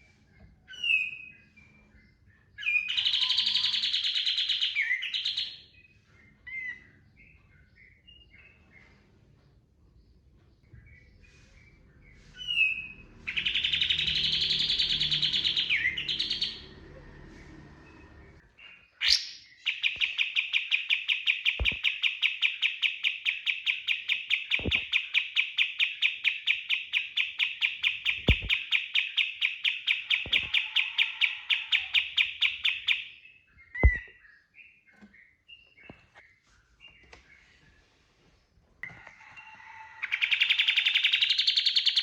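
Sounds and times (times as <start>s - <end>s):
short bird chirps: 11.0s - 16.6s.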